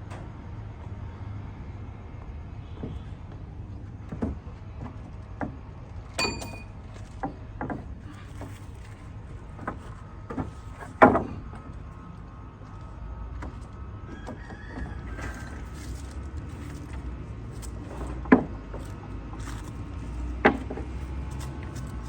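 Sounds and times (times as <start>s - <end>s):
metallic ringing impact: 6.2s - 6.8s.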